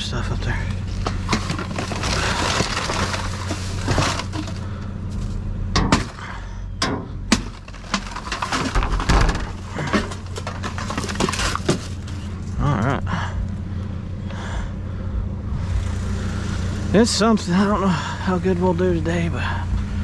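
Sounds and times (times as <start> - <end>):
trash clattering and rustling: 0.0 - 12.7
steady low hum: 0.0 - 20.0
sharp knocks and clanks: 5.7 - 12.2.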